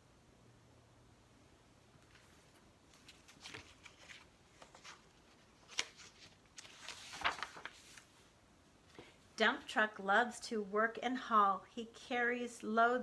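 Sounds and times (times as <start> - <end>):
book pages rustling: 2.0 - 8.3.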